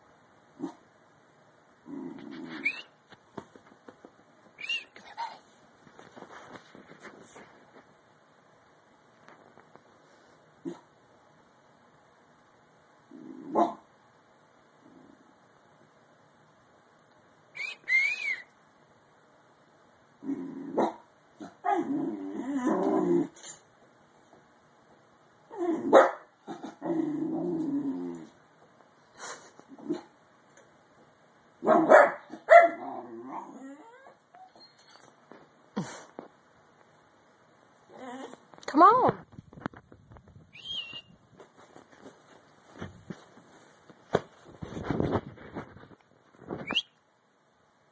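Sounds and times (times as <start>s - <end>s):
puppy whines and yips: 2.5s - 2.9s, 4.6s - 5.4s, 33.7s - 35.1s
puppy squeak: 2.6s - 2.9s, 4.6s - 5.4s.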